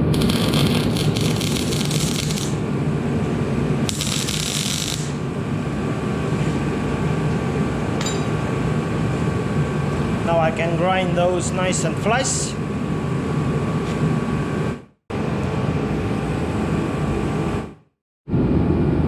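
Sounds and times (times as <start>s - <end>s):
welding arc crackling: 0.0s - 2.7s, 3.8s - 5.4s
steady low hum: 0.0s - 19.0s.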